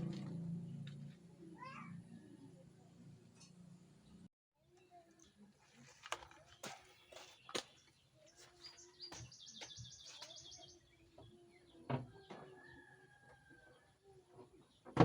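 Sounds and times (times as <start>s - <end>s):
bird chirping: 6.6s - 11.8s.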